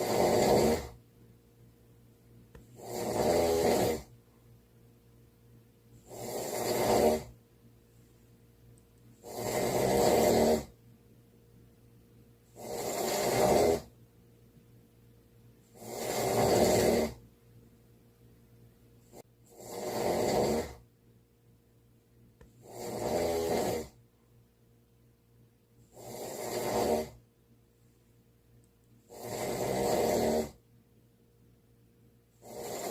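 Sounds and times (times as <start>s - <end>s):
loud snoring: 0.0s - 1.0s, 2.6s - 4.1s, 6.0s - 7.4s, 9.2s - 10.8s, 12.5s - 14.0s, 15.7s - 17.2s, 19.0s - 20.8s, 22.4s - 24.0s, 25.8s - 27.2s, 29.0s - 30.6s, 32.4s - 32.9s
quiet breaths: 0.0s - 1.7s, 32.2s - 32.9s.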